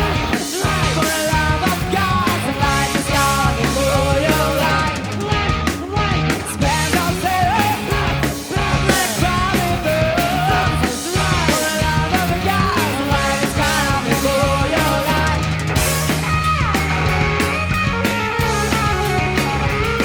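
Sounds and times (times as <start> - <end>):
bass: 0.0 - 20.0
distorted guitars: 0.0 - 20.0
drums: 0.0 - 20.0
vocals: 0.0 - 20.0.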